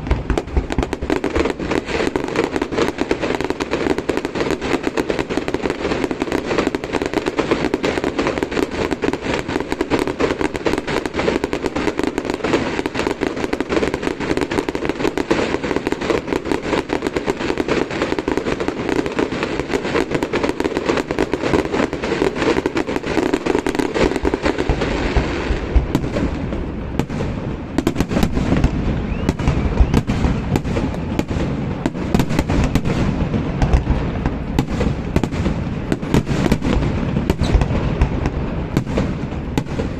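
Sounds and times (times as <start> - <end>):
deep firework booms: 0.0 - 39.9
fireworks crackling: 0.0 - 39.9.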